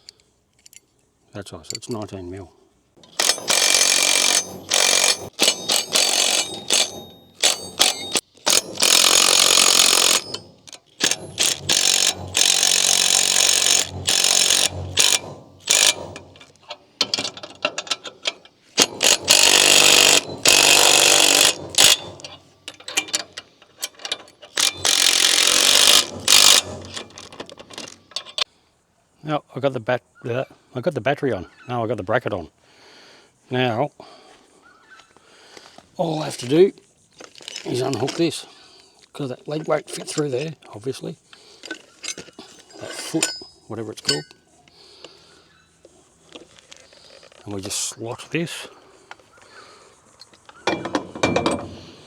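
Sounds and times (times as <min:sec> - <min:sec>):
ratchet wrench clicking: 0:03.0 - 0:28.5.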